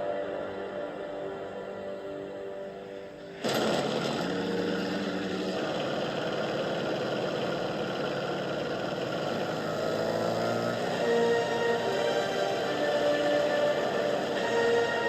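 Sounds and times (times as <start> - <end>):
film score held tones: 0.0 - 15.0
loud engine drone: 3.2 - 15.0.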